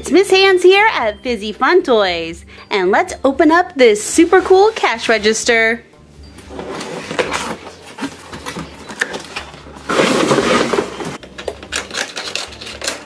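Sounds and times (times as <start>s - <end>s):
packaging rustling: 6.8s - 13.0s.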